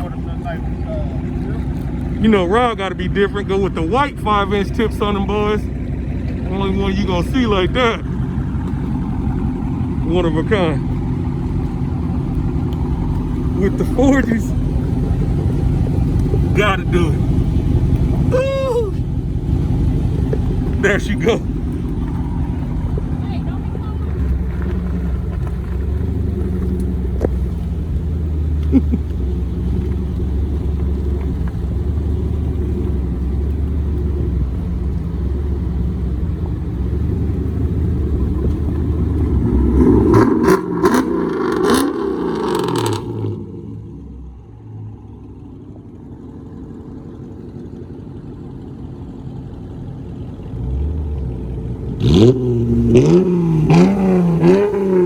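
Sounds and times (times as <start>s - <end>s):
car exhaust idling and revving: 0.0s - 55.0s.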